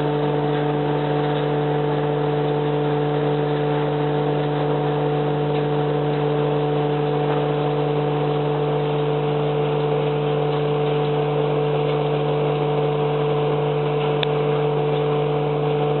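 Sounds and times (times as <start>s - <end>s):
machine drone: 0.0s - 16.0s.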